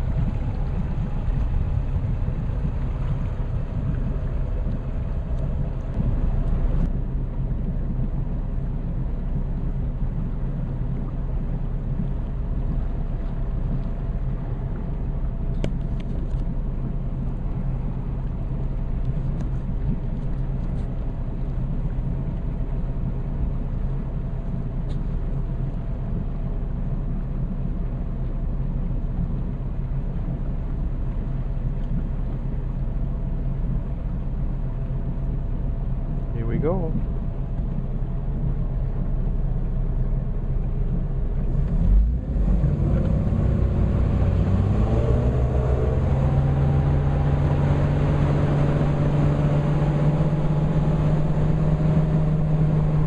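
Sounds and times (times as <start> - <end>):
motorboat engine droning: 0.0 - 53.0.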